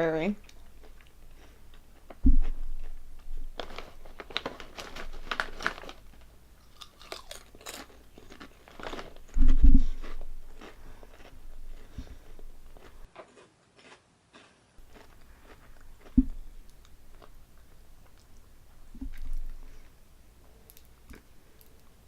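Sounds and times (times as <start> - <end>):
loud low thump: 2.2 - 3.5, 9.3 - 10.0
chewing potato chips: 3.6 - 18.4.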